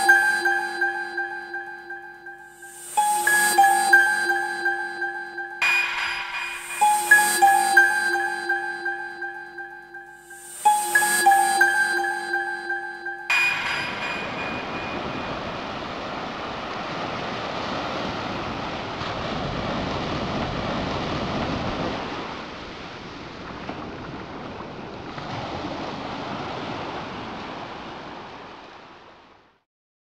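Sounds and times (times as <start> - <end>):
sea waves washing onto beach: 13.3 - 29.5
wind buffeting microphone: 13.8 - 29.0.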